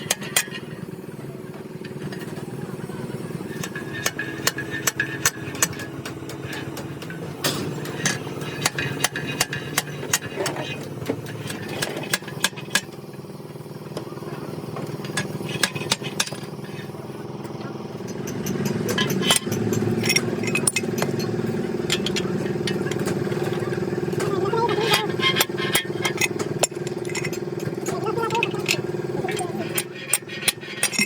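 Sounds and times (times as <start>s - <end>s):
sharp metallic taps and knocks: 3.6s - 13.0s, 18.0s - 23.2s.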